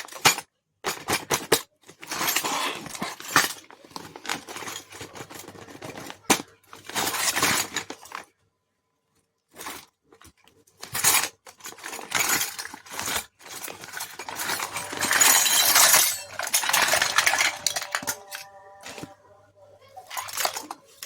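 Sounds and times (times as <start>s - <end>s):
crinkly packaging: 10.8s - 19.1s
light clinks of small toy pieces: 11.7s - 19.1s.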